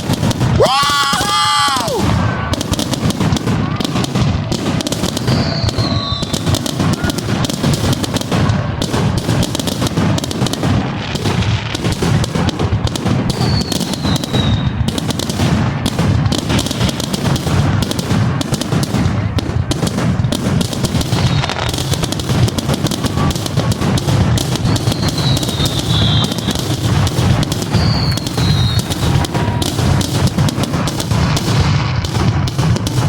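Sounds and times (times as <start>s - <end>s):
fireworks bangs and crackling: 0.0s - 33.0s
falling firework whistles: 0.6s - 2.5s, 5.1s - 7.2s, 13.3s - 14.8s, 21.1s - 21.8s, 24.4s - 30.2s.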